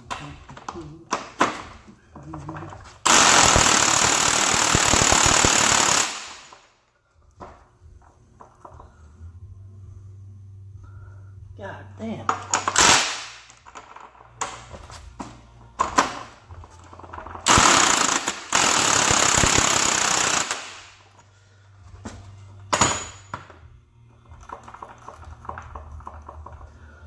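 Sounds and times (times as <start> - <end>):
impact wrench hammering: 3.0 - 6.6, 17.2 - 21.1, 22.7 - 23.5.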